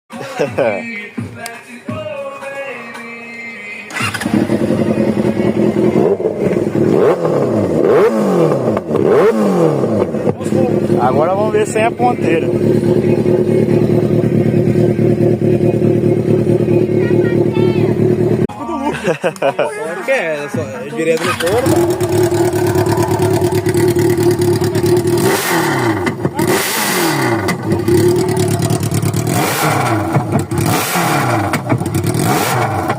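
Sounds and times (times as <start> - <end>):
motorcycle engine revving: 3.9 - 18.5, 21.2 - 32.9.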